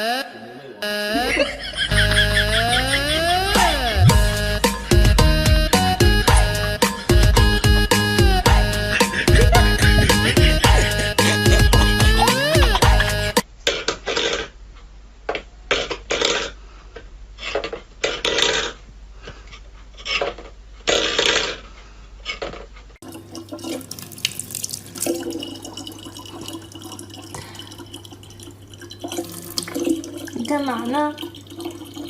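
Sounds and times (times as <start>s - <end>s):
tap running: 9.3s - 13.4s
low electrical hum: 21.5s - 32.0s
water splashing: 23.0s - 32.0s.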